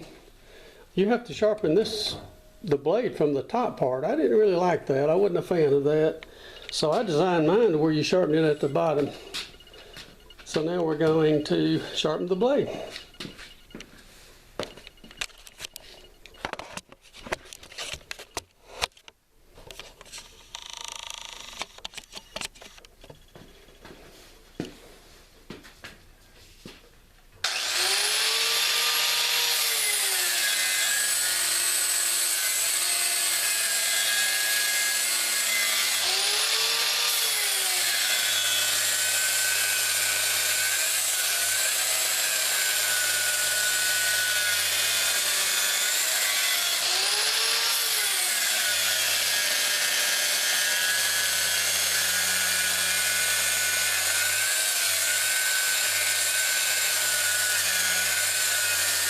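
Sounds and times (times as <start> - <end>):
grinder whining against metal blade: 5.1 - 13.9, 27.4 - 59.0.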